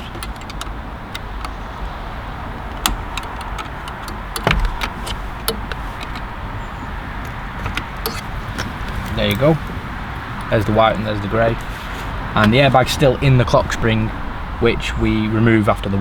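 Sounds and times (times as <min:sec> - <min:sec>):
steady background noise: 0:00.0 - 0:16.0.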